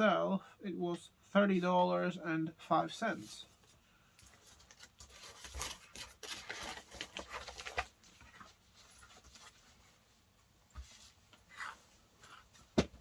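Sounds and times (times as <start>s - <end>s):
paper and cardboard rustling: 3.5s - 10.1s.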